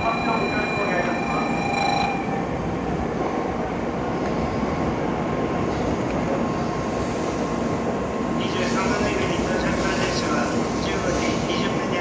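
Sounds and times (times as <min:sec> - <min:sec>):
train rumbling into station: 0:00.0 - 0:12.0.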